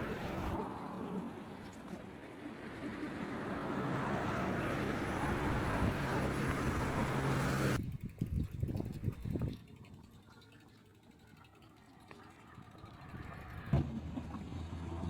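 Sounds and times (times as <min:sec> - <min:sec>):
vehicle passing on road: 0:00.0 - 0:07.8, 0:11.4 - 0:15.0.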